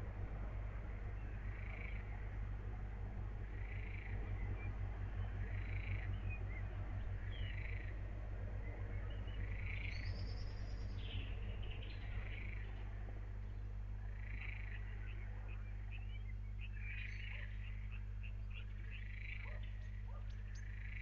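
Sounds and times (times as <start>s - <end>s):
steady low hum: 0.0s - 21.0s
bird chirping: 8.6s - 12.7s, 13.5s - 21.0s.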